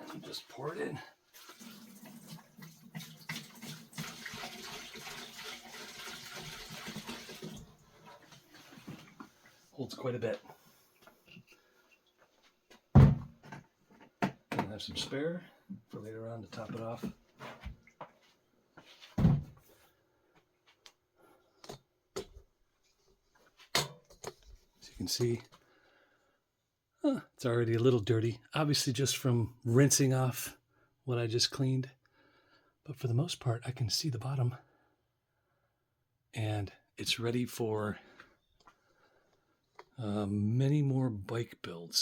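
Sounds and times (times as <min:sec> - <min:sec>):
liquid pouring and splashing: 0:00.0 - 0:09.6.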